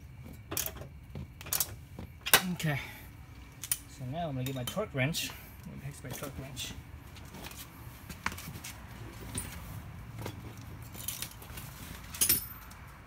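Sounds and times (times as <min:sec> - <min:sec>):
metal hand tools clinking: 0:12.1 - 0:12.8.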